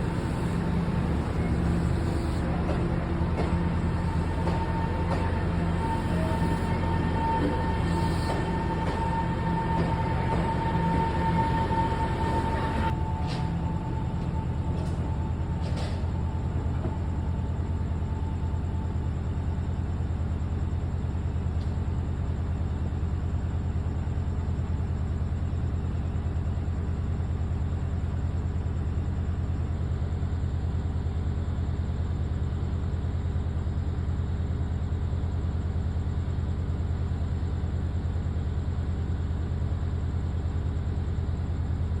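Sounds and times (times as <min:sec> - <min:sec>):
locomotive idling drone: 0:00.0 - 0:25.5.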